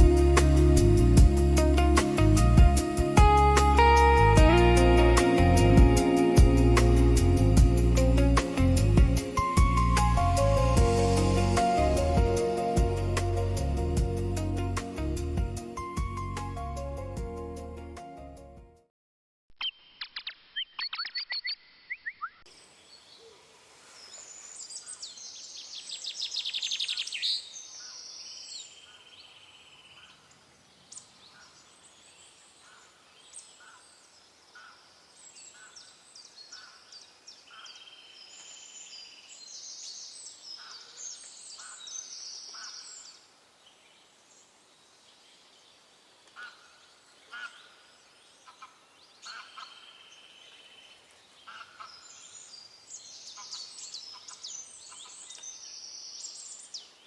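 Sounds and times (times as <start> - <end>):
birds singing: 45.8 - 57.0.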